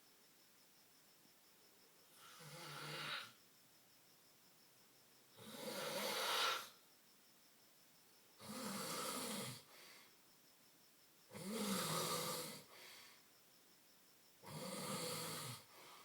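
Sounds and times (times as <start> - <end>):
man snoring loudly: 2.2 - 3.3, 5.4 - 6.7, 8.4 - 9.7, 11.3 - 12.7, 14.4 - 15.7.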